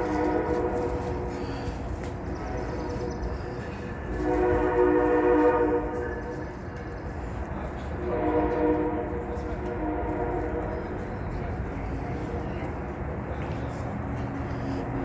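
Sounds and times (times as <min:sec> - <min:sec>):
train horn blasts: 0:00.0 - 0:06.5, 0:08.0 - 0:11.1.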